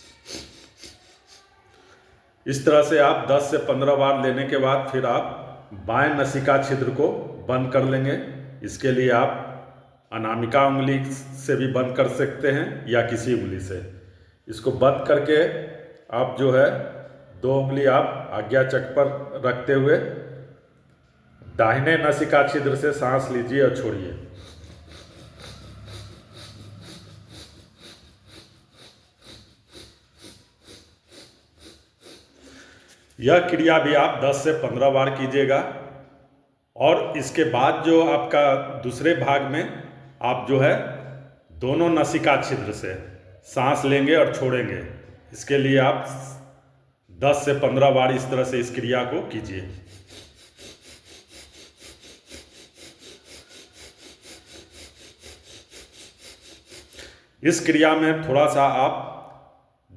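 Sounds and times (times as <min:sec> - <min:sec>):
sharp nasal breathing: 0:00.0 - 0:02.4, 0:22.1 - 0:33.5, 0:49.4 - 0:57.4.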